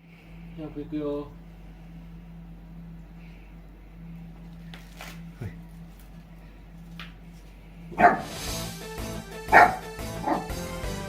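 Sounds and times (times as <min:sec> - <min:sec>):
dog barking: 0:08.0 - 0:08.4, 0:09.5 - 0:10.6
background music: 0:08.0 - 0:11.0.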